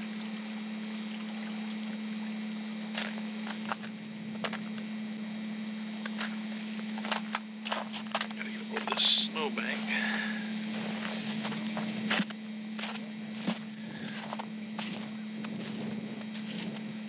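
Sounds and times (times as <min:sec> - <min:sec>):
steady low hum: 0:00.0 - 0:17.0
short crunches and clicks: 0:02.9 - 0:09.2, 0:10.7 - 0:17.0.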